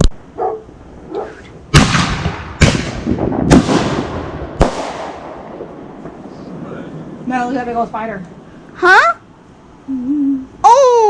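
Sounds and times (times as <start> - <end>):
echoing rumble: 0.8 - 8.7
fireworks shells booming: 1.4 - 8.5.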